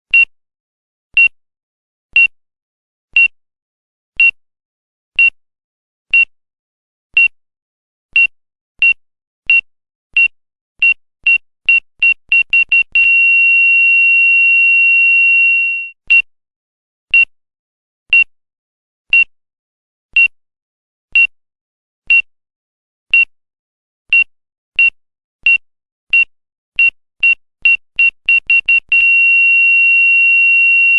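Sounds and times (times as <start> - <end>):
heart monitor beeping: 8.2 - 16.3, 24.1 - 30.9
heart monitor flatline tone: 8.2 - 16.3, 24.2 - 30.9.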